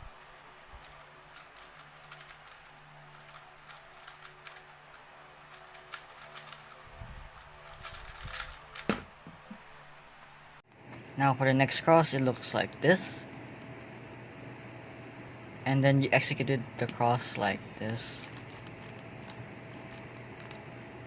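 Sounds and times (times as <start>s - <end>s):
puzzle cube plastic clicks: 0.8s - 6.8s, 7.4s - 9.1s, 18.2s - 20.7s.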